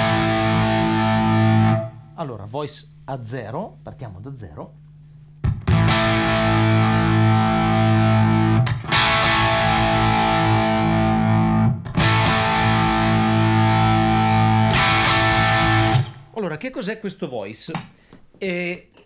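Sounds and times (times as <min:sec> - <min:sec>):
overdriven electric guitar chord: 0:00.0 - 0:02.0, 0:05.5 - 0:16.2.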